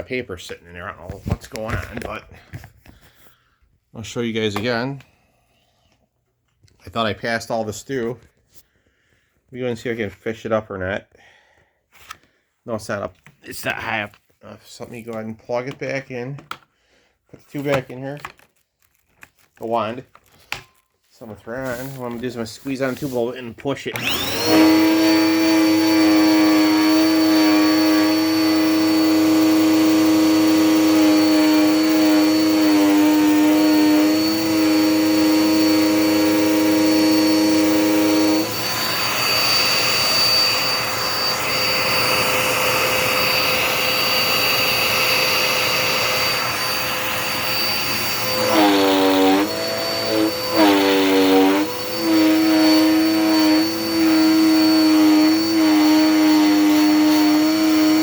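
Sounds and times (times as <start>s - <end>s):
vacuum motor whine: 23.9s - 58.0s.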